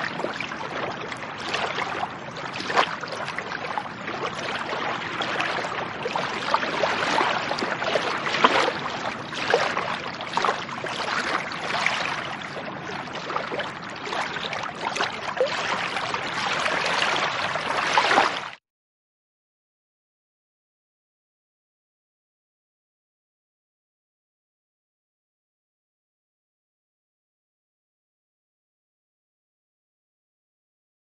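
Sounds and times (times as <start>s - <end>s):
water lapping and splashing: 0.0s - 18.6s.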